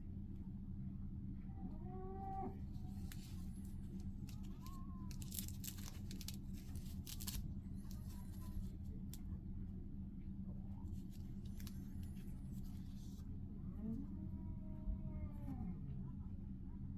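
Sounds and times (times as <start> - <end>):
low steady hum: 0.0 - 16.9
clicks and rustling of packaging: 2.9 - 9.2.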